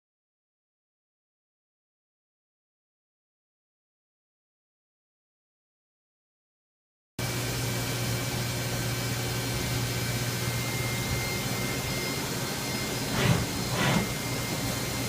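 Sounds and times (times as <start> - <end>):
short loud machine noise: 13.0 - 14.3.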